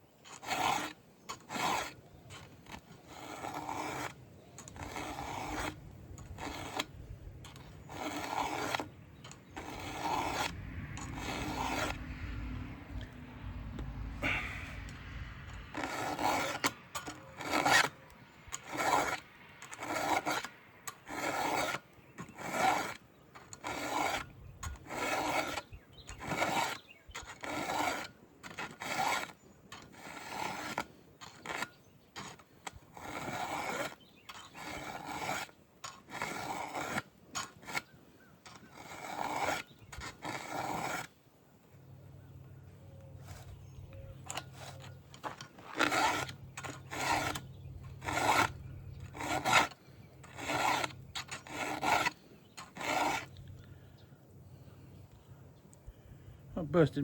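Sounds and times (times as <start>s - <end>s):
file rasping on chainsaw chain: 0.2s - 41.1s, 43.2s - 53.6s.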